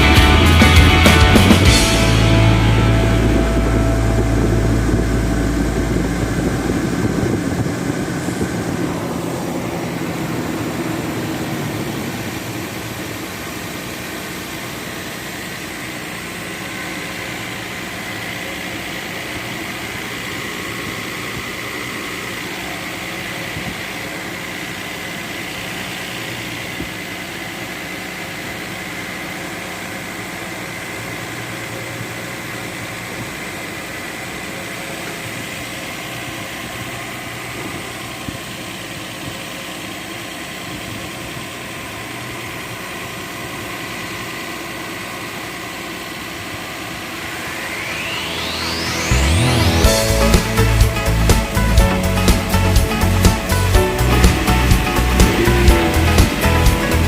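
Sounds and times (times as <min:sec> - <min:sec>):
background music: 0:00.0 - 0:06.5, 0:47.6 - 0:57.0
engine idling with whine: 0:00.0 - 0:57.0.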